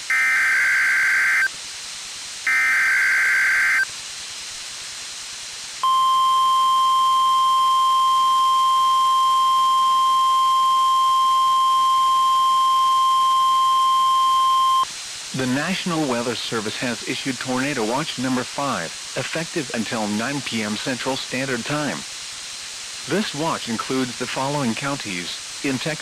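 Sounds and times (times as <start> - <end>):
screeching digital data bursts: 0.0 - 1.5, 2.5 - 3.9
steady warning alarm tone: 0.0 - 1.5, 2.5 - 3.9, 5.8 - 14.9.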